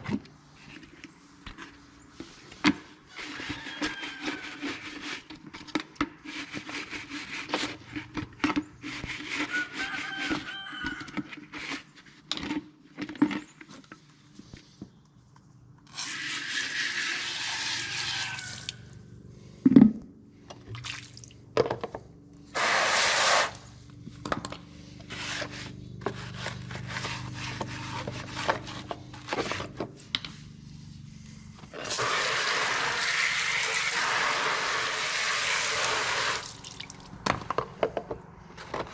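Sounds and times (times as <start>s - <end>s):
water running into container: 15.9s - 18.8s, 31.8s - 37.1s.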